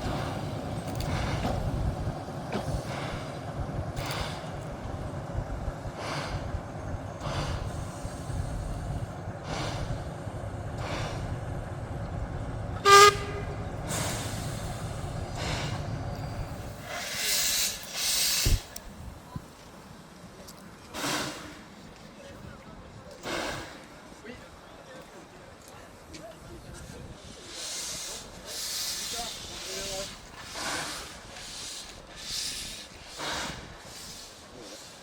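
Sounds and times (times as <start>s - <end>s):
steam locomotive chuffing: 0.0s - 19.6s, 20.8s - 25.4s, 26.3s - 35.0s
train rumble: 0.0s - 35.0s
steam whistle blast: 12.8s - 13.6s.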